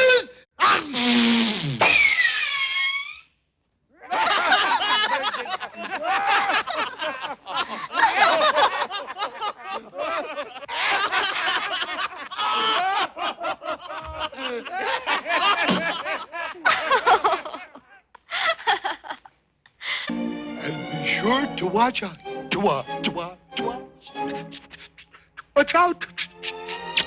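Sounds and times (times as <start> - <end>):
cartoon voices laughing and chattering: 24.1 - 27.0.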